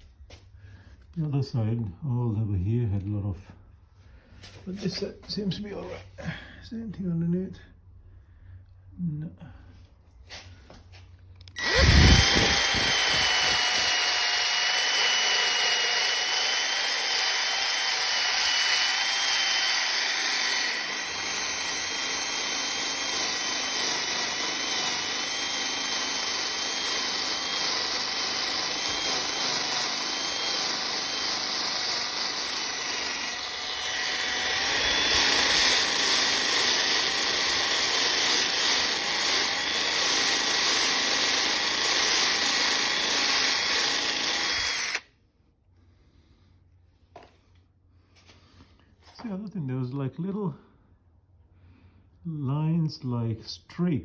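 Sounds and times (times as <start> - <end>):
power tool motor whine: 11.4 - 45.1.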